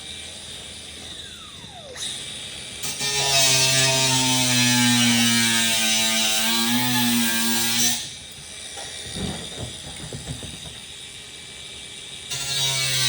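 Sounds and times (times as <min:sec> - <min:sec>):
electric power tool motor running: 0:00.0 - 0:05.2
metal knocking and rattling: 0:09.0 - 0:11.1.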